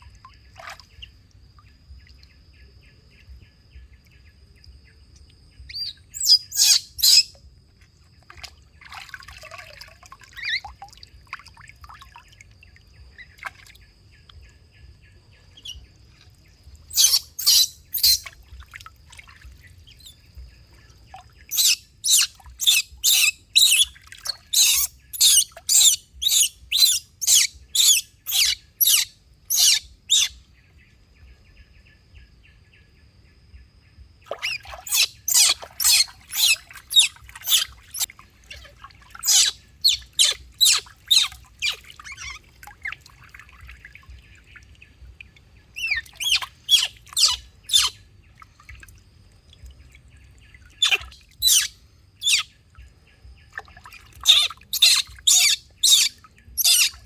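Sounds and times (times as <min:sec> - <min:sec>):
animal high-pitched chirps: 0:05.7 - 0:07.4, 0:16.9 - 0:18.3, 0:21.5 - 0:30.4, 0:34.4 - 0:38.1, 0:39.2 - 0:42.4, 0:45.8 - 0:48.0, 0:50.8 - 0:52.5, 0:54.2 - 0:57.0.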